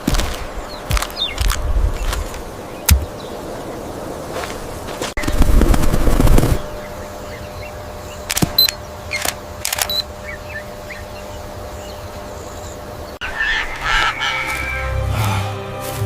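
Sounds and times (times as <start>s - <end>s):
bird calling: 0.6s - 3.8s, 6.5s - 15.6s
camera shutter clicks: 8.3s - 10.1s.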